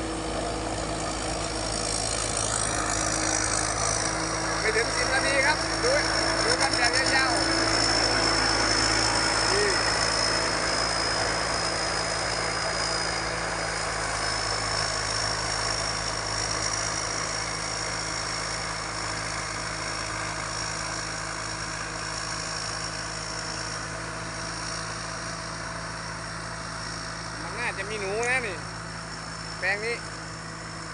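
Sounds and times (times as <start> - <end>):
thin high whine: 0.0 - 17.4
combine harvester diesel engine hum: 0.0 - 30.9.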